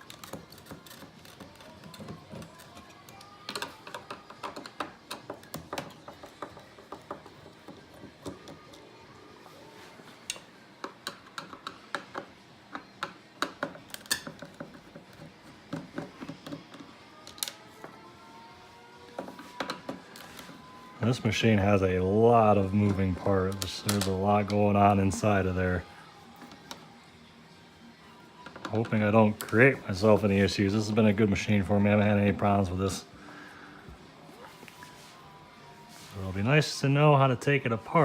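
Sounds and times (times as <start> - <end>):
screwdriver clicks and taps: 10.3 - 17.6.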